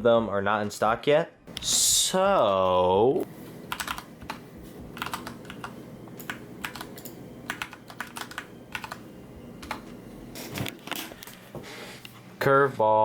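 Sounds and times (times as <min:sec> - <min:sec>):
typing on computer keyboard: 0:03.7 - 0:04.4, 0:05.0 - 0:09.0, 0:09.6 - 0:09.8.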